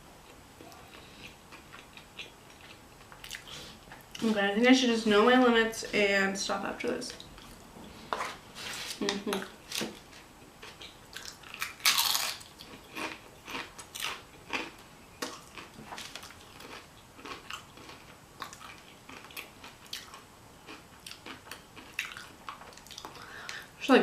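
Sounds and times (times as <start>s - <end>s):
chewing and wet mouth sounds: 0.2s - 4.2s, 10.4s - 23.6s.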